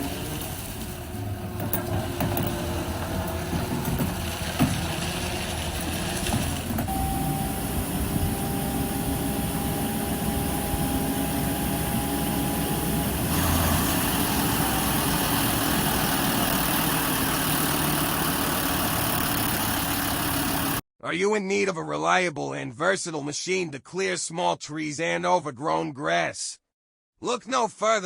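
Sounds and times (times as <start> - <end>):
skid steer engine running: 0.0 - 20.8
high whine: 6.9 - 13.6.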